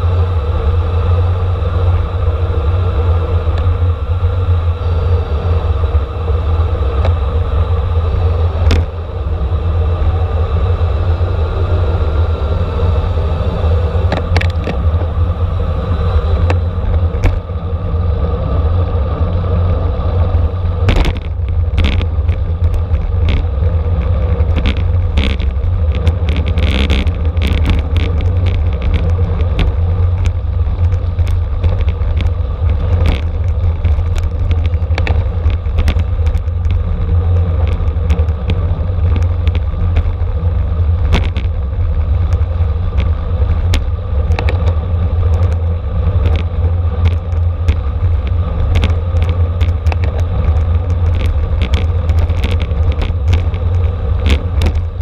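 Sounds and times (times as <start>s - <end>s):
road rumble: 0.0s - 55.0s
wind rush: 0.0s - 55.0s
bicycle clicks and rattles: 13.5s - 55.0s.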